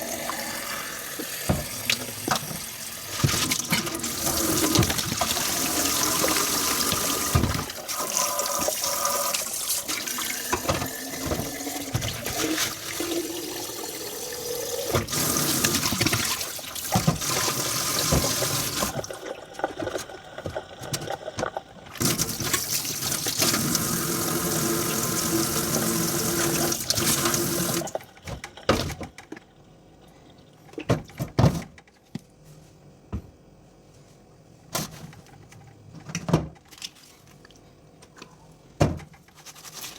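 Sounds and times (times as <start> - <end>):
tap running into sink: 1.1 - 7.8, 14.9 - 19.2.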